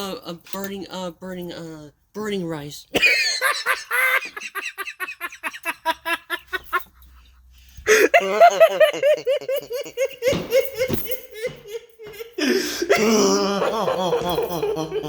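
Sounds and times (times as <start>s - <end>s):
person laughing hard: 3.0s - 7.0s, 7.9s - 15.0s.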